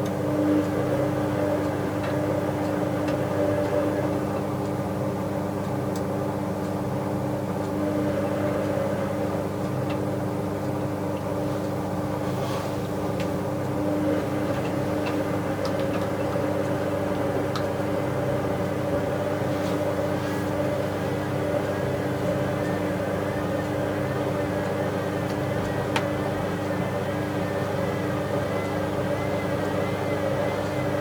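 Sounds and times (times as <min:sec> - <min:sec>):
washing machine motor hum: 0:00.0 - 0:31.0.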